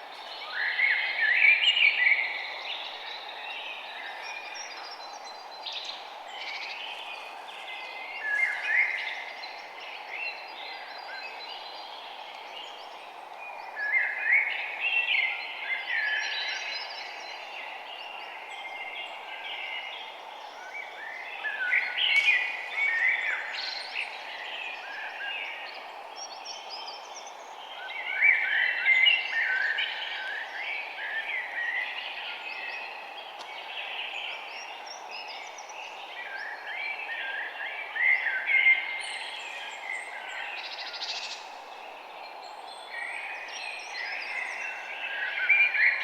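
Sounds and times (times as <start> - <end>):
birds calling and chirping: 18.4 - 46.0.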